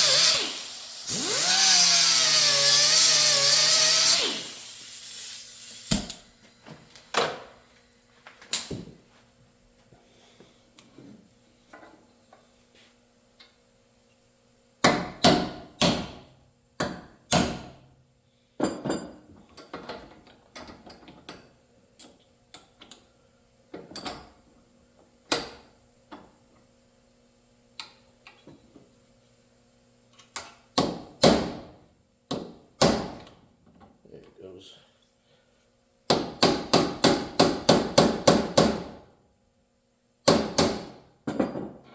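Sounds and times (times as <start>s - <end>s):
hammer striking a punch: 14.8s - 16.2s, 16.8s - 17.8s, 40.3s - 41.0s.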